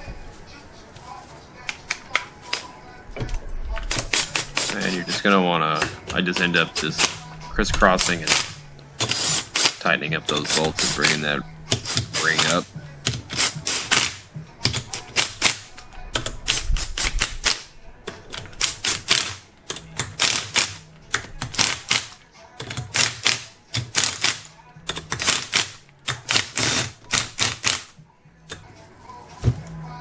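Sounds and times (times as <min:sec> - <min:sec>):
ratchet wrench clicking: 0:18.5 - 0:27.9.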